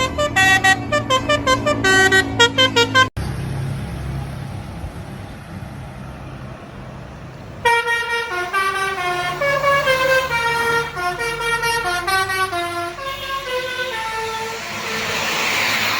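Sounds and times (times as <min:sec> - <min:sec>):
bus multi-tone horn melody: 0:00.0 - 0:03.2, 0:07.6 - 0:15.2
bus engine rumble: 0:00.0 - 0:15.9.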